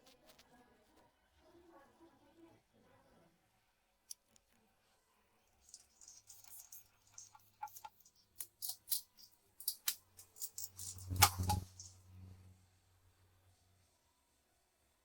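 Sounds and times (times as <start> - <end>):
metal tools and parts clinking: 5.7 - 11.9.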